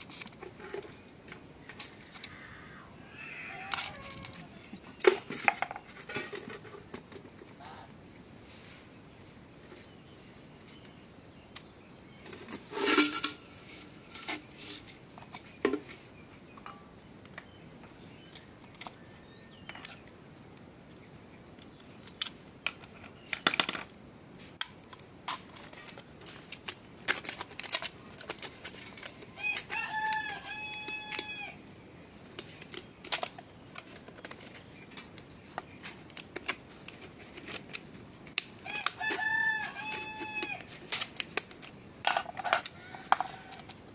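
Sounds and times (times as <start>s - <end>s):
rooster crowing: 2.3s - 4.7s, 29.4s - 31.6s, 38.6s - 40.7s, 42.7s - 43.7s.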